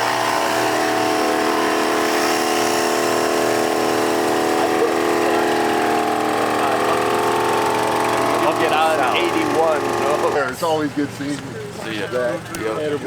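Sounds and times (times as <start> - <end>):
air compressor motor whine: 0.0 - 10.9.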